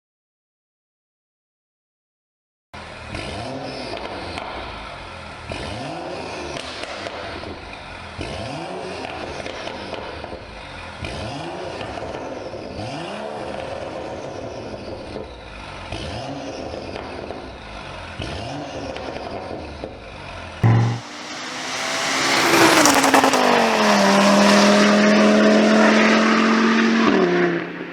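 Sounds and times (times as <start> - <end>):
loud low bang: 20.6 - 21.3
car exhaust revving: 20.6 - 27.9
exhaust crackling and popping: 21.8 - 24.8.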